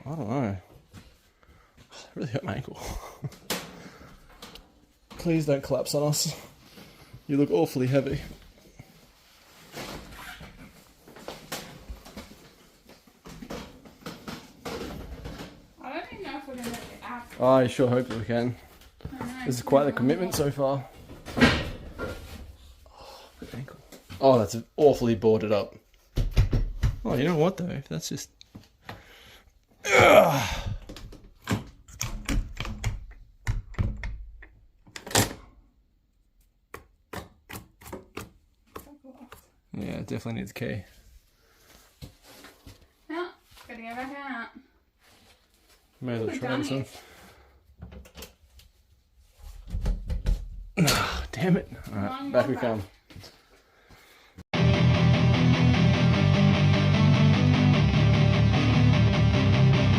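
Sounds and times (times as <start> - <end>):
knocks on door: 26.2 - 27.1
knocks scuffs and creaks: 40.9 - 44.3, 51.4 - 54.2.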